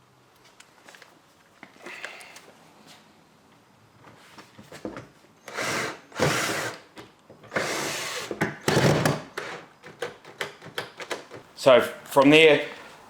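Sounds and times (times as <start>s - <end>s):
cordless drill driving screws: 5.5s - 6.8s, 7.5s - 9.5s.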